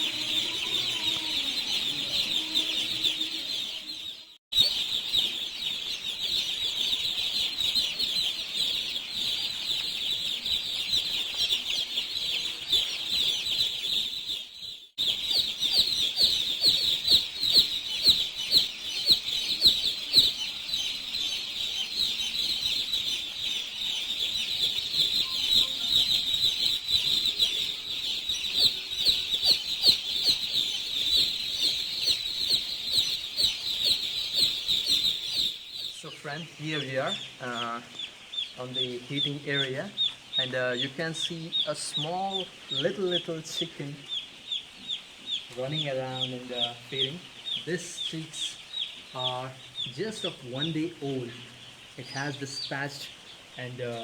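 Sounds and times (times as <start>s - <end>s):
chicks peeping: 0.0s - 54.0s.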